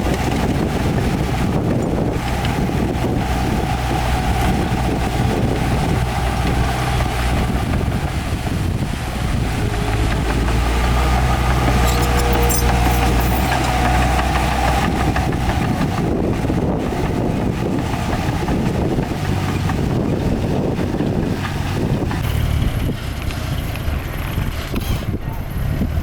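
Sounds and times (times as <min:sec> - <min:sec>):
heavy diesel engine running: 0:00.0 - 0:26.0
faint metallic clatter: 0:11.0 - 0:14.5.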